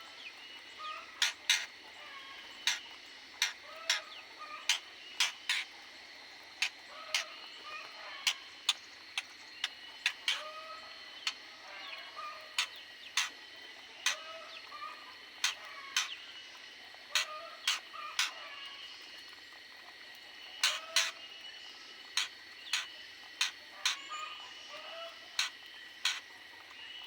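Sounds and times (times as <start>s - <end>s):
birds chirping: 0.0s - 19.7s, 20.4s - 27.0s.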